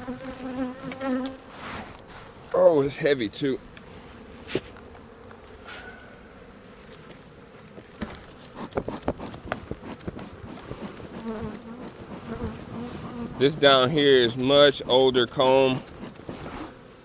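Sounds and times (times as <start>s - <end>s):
bees buzzing: 0.0s - 17.0s
sharp clicks and knocks: 7.8s - 12.3s.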